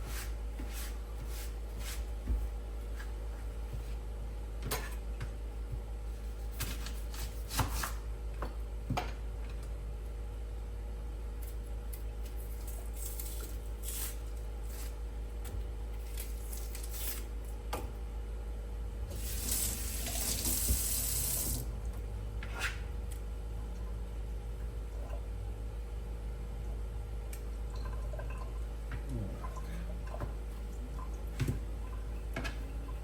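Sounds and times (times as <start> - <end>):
kitchen tap running: 19.0 - 21.8.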